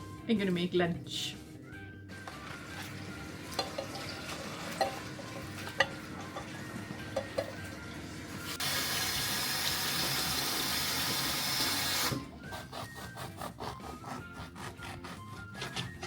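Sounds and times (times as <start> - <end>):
tap running water: 2.2 - 12.3.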